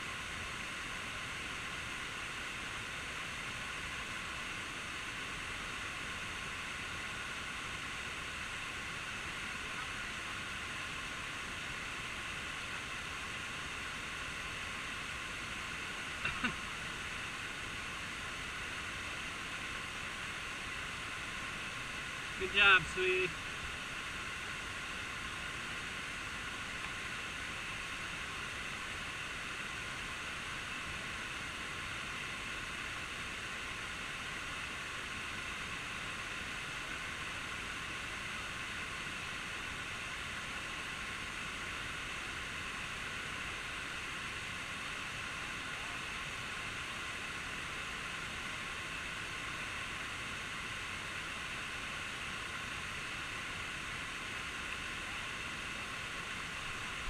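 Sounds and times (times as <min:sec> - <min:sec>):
waterfall rushing hiss: 0:00.0 - 0:57.0.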